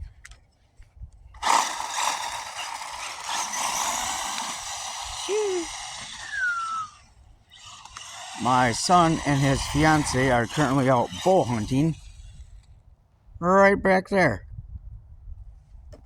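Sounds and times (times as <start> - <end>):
toy car electric motor whining: 1.4 - 12.8.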